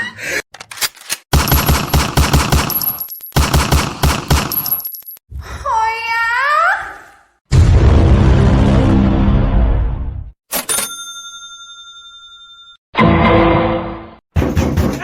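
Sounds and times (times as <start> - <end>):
machine-gun fire bursts: 1.3 - 2.8, 3.4 - 4.8.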